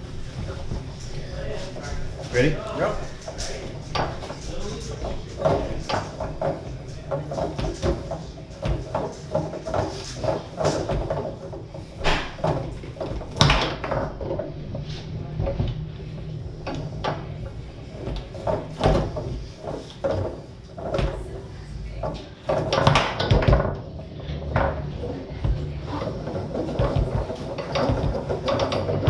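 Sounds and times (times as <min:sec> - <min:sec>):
foosball ball knocking: 0:02.9 - 0:21.2, 0:21.9 - 0:29.0
foosball rods slammed: 0:11.8 - 0:14.2, 0:22.5 - 0:23.9.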